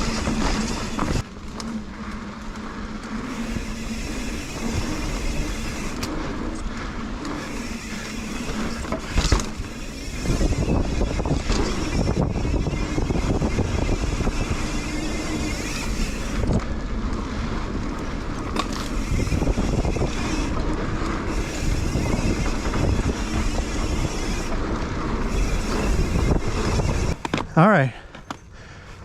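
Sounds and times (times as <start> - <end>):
tyre noise on dirt: 0.0 - 29.0
bike knocks and rattles: 3.3 - 16.8, 18.0 - 27.6
wind rush on microphone: 7.4 - 27.5.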